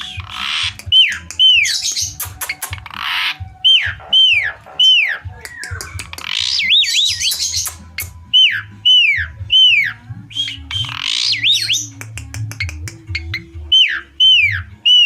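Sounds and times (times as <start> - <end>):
harsh rasping squawk: 0.0 - 11.9.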